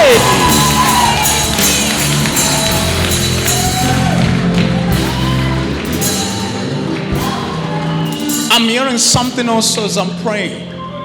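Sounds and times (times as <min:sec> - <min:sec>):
held keyboard chords: 0:00.0 - 0:10.4.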